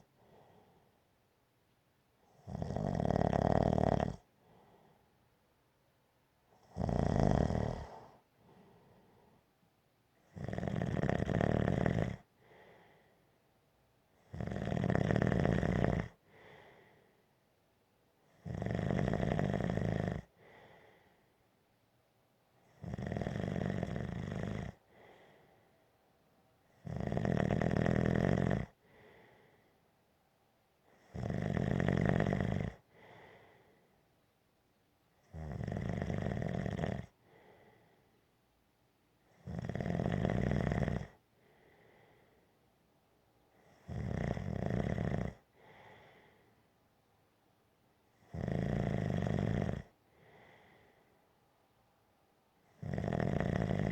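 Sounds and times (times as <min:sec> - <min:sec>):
faint breath: 0:00.0 - 0:01.3, 0:04.2 - 0:05.4, 0:07.7 - 0:09.7, 0:12.3 - 0:13.7, 0:16.2 - 0:17.6, 0:20.3 - 0:21.6, 0:24.8 - 0:26.2, 0:28.7 - 0:30.0, 0:32.8 - 0:34.1, 0:37.1 - 0:38.4, 0:41.1 - 0:42.8, 0:45.4 - 0:46.8, 0:49.8 - 0:51.5
person snoring: 0:02.4 - 0:04.3, 0:06.6 - 0:08.2, 0:10.3 - 0:12.3, 0:14.3 - 0:16.6, 0:18.4 - 0:20.8, 0:22.8 - 0:24.8, 0:26.8 - 0:29.2, 0:31.0 - 0:33.6, 0:35.3 - 0:37.1, 0:39.4 - 0:41.2, 0:43.7 - 0:46.1, 0:48.2 - 0:50.6, 0:52.8 - 0:53.9.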